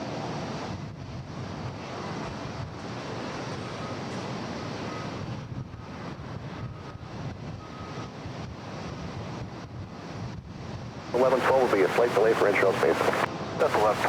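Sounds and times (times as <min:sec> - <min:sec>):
jet engine noise: 0:11.1 - 0:14.0.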